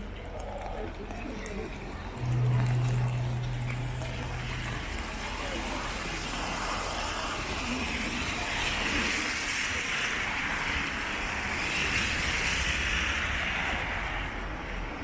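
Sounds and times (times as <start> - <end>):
car tyres hissing on wet road: 5.2 - 15.0.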